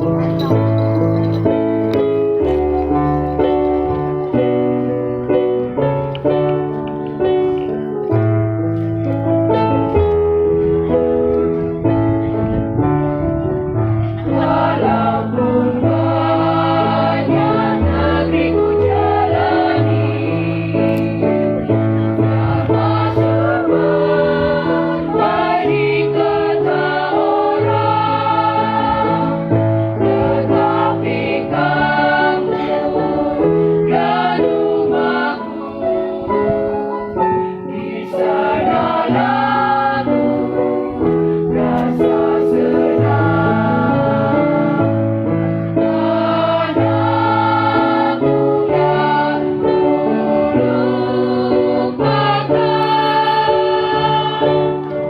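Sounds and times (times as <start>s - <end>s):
instrumental accompaniment: 0.0s - 55.0s
choir singing: 14.0s - 55.0s.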